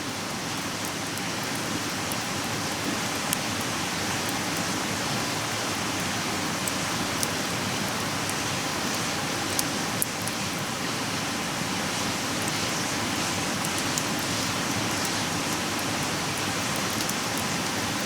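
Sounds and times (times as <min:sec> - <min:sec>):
campfire crackling: 0:00.1 - 0:18.0.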